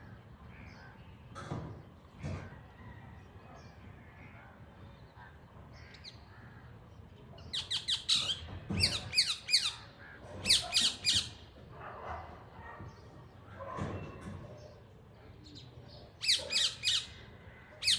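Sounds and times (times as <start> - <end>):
parrot squawking: 10.4 - 11.4.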